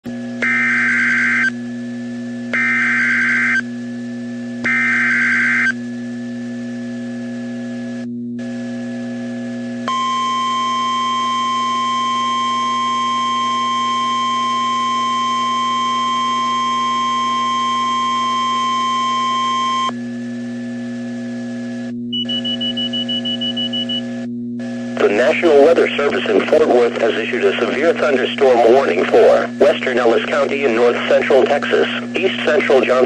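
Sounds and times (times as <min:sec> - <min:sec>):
steady warning alarm tone: 0:00.4 - 0:01.6, 0:02.5 - 0:03.7, 0:04.6 - 0:05.8, 0:09.9 - 0:19.9, 0:22.1 - 0:27.2
buzzy data tone bursts: 0:02.6 - 0:03.6, 0:04.7 - 0:05.8
radio low hum: 0:21.9 - 0:33.0.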